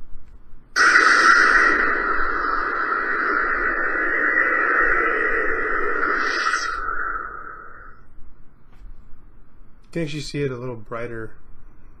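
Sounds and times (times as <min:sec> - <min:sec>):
lightsaber powering down: 0:00.8 - 0:08.0
lightsaber hum: 0:00.8 - 0:08.1.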